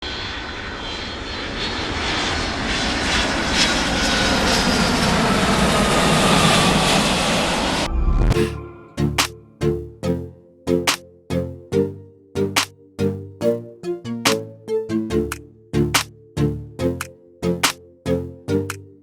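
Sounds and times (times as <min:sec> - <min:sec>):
aircraft engines running: 0:00.0 - 0:08.4
low rumble: 0:06.9 - 0:08.7.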